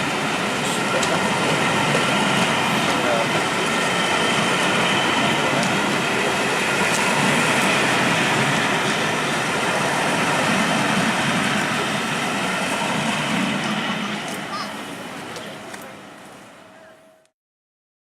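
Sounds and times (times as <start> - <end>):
train wheels rushing on rails: 0.0 - 17.2.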